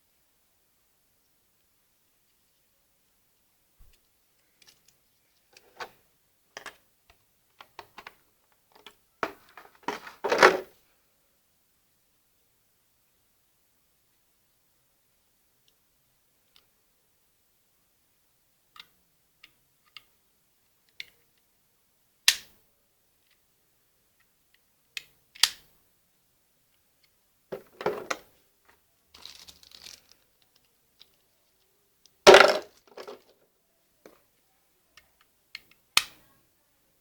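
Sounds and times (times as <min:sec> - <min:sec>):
plastic parts clicking and knocking: 0:06.6 - 0:10.7, 0:27.5 - 0:31.2, 0:32.3 - 0:33.4
packaging crinkling: 0:29.2 - 0:30.2.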